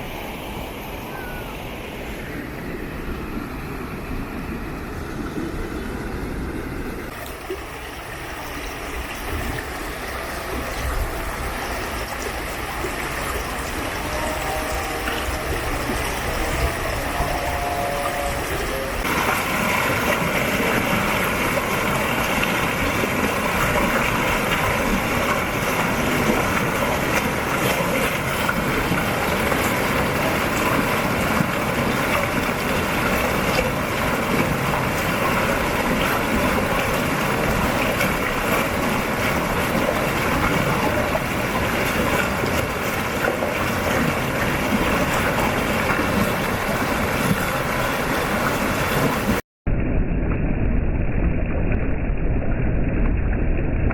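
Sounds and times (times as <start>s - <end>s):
water rushing over stone dam: 7.0s - 49.4s.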